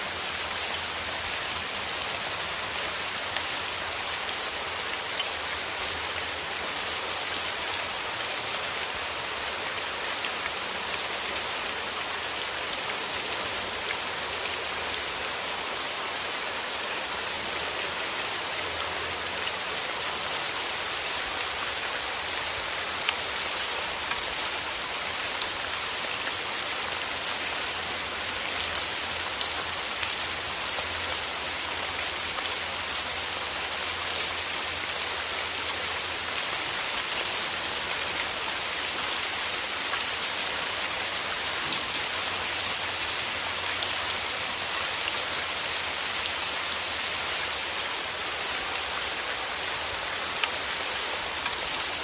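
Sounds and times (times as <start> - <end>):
steady rain hiss: 0.0 - 52.0.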